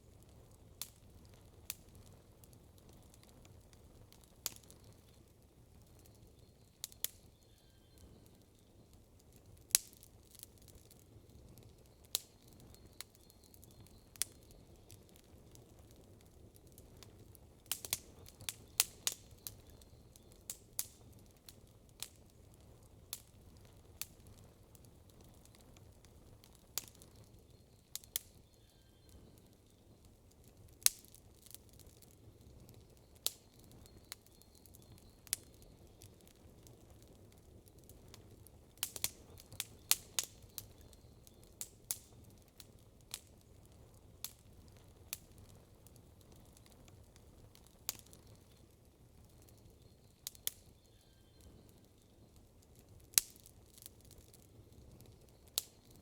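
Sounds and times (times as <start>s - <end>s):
campfire crackling: 0.0s - 56.0s
faint low background noise: 0.0s - 56.0s.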